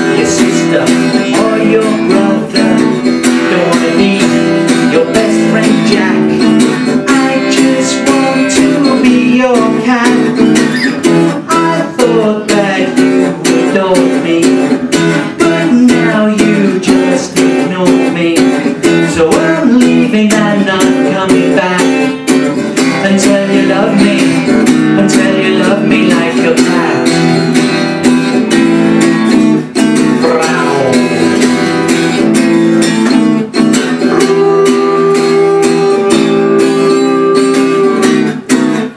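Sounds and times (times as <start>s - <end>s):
acoustic guitar strumming: 0.0s - 38.9s.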